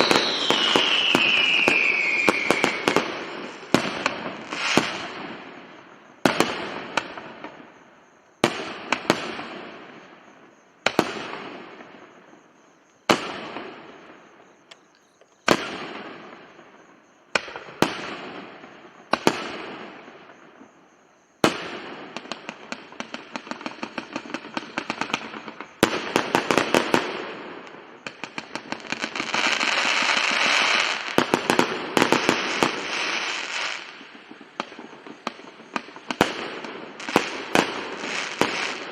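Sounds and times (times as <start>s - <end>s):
firework bangs echoing: 0.0s - 5.6s, 21.4s - 38.9s
rapid firework crackling: 21.5s - 38.9s.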